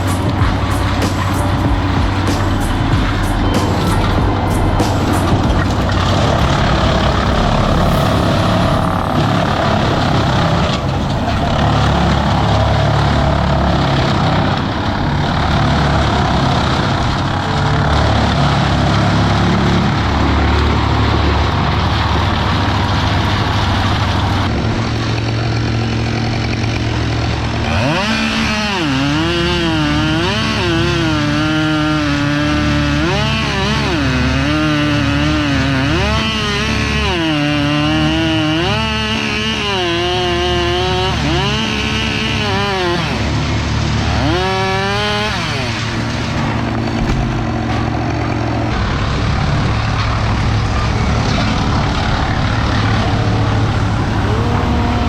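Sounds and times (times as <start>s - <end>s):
chainsaw revving and cutting: 0.0s - 55.0s
engine running: 0.0s - 55.0s.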